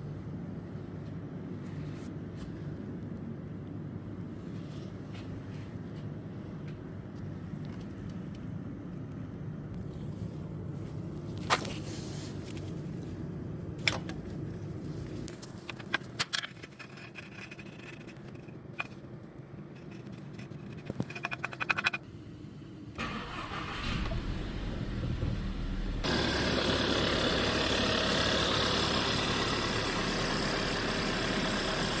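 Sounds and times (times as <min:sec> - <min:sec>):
car engine cranking and idling: 0:23.0 - 0:32.0.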